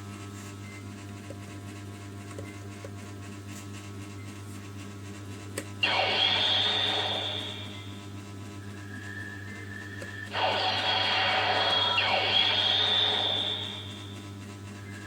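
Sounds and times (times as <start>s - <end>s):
toy speaker electronic sound effect: 5.8s - 8.1s, 9.8s - 14.2s.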